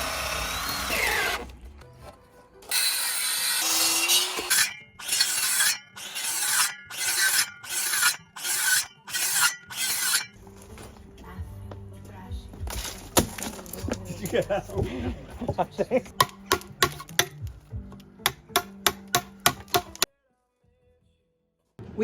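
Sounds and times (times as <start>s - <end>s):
hand saw cutting timber: 0.0s - 1.5s, 2.7s - 10.4s, 12.8s - 17.4s, 18.3s - 20.1s
power tool: 0.0s - 1.6s, 2.7s - 10.3s.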